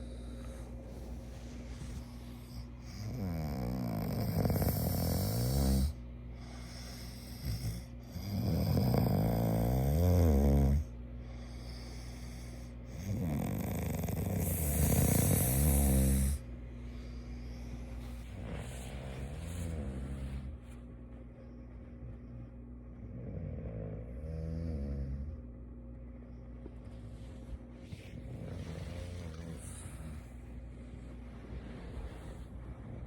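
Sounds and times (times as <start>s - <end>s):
person snoring: 2.9s - 6.0s, 6.7s - 10.9s, 13.0s - 16.4s.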